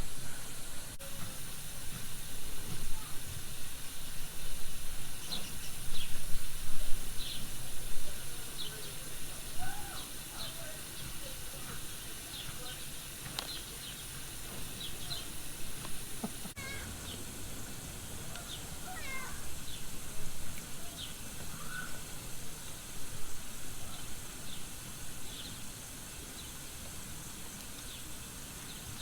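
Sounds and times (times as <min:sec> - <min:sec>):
steady background hiss: 0:00.0 - 0:29.0
cat meowing: 0:18.9 - 0:19.4.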